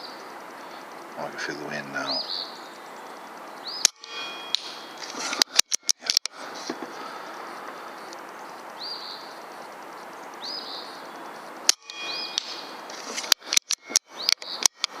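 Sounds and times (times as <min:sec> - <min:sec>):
bird chirping: 0:00.0 - 0:15.0
outdoor hiss: 0:00.0 - 0:15.0
sharp clicks: 0:03.3 - 0:08.8, 0:11.6 - 0:15.0.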